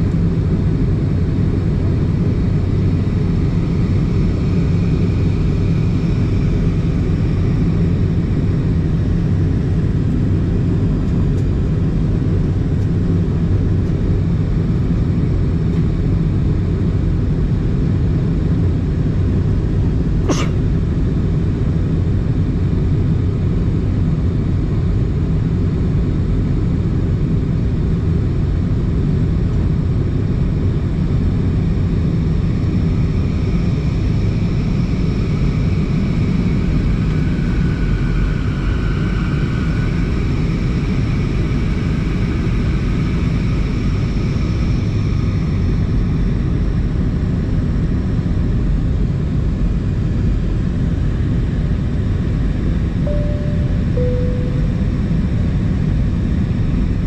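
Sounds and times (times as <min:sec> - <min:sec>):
airplane cabin rumble: 0:00.0 - 0:22.6.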